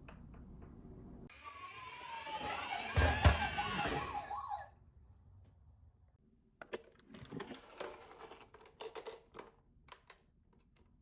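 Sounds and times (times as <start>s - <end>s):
toy ambulance siren: 1.4s - 4.6s.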